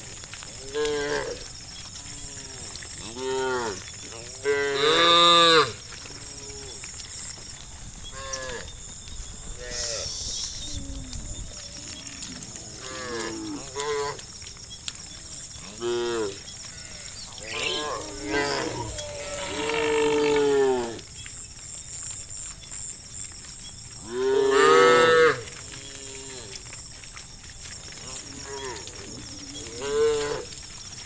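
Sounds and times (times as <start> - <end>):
cows mooing: 11.9 - 14.2, 15.7 - 21.0.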